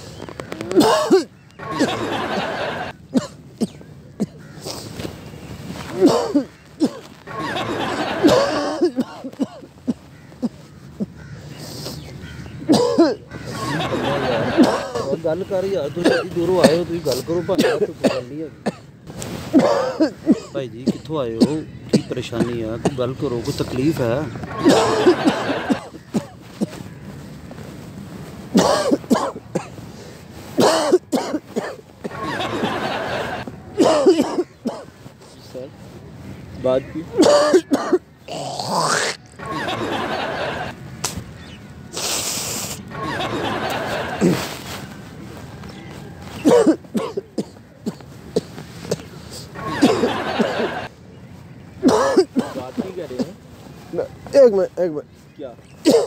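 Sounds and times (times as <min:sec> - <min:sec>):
man clearing throat: 0:00.7 - 0:02.0, 0:06.0 - 0:09.7, 0:12.7 - 0:13.2, 0:28.6 - 0:29.7, 0:30.6 - 0:32.4, 0:33.8 - 0:34.9, 0:37.2 - 0:39.1, 0:46.4 - 0:50.2, 0:51.9 - 0:53.3
man coughing: 0:00.7 - 0:02.2, 0:06.0 - 0:11.2, 0:12.7 - 0:13.2, 0:14.5 - 0:15.2, 0:16.0 - 0:16.9, 0:17.5 - 0:18.9, 0:19.5 - 0:23.1, 0:24.6 - 0:26.8, 0:28.5 - 0:29.8, 0:30.6 - 0:32.6, 0:33.8 - 0:34.9, 0:37.2 - 0:38.0, 0:46.4 - 0:50.6, 0:51.8 - 0:53.4.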